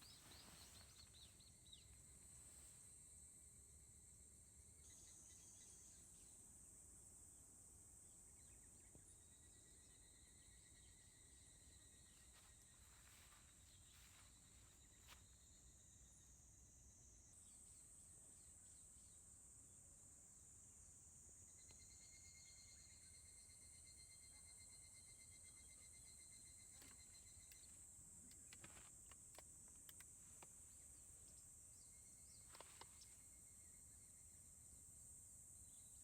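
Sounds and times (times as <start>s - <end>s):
insects high-pitched buzz: 0.0s - 36.0s
soft clicks: 26.8s - 30.6s.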